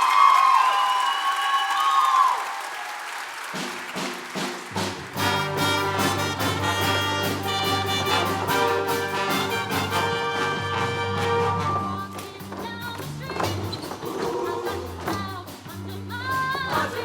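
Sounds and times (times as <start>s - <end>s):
live band with brass: 3.5s - 12.6s
sharp drum hits: 4.4s - 11.4s
steady bass line: 5.2s - 12.2s.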